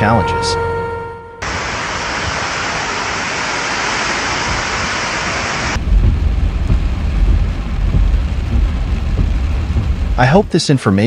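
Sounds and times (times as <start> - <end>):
heavy rain pouring: 1.4 - 11.0
light rain: 1.4 - 11.0
low rumble: 4.4 - 10.6.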